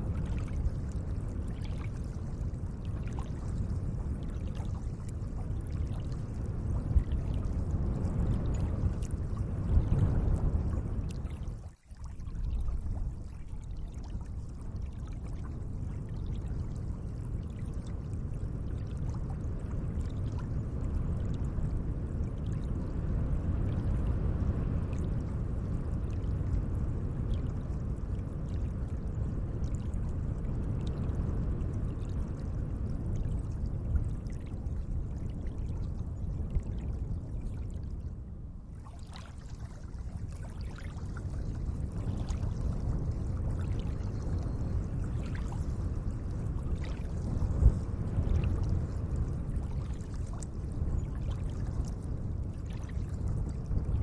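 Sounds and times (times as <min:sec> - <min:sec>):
lake water washing: 0:38.7 - 0:52.0.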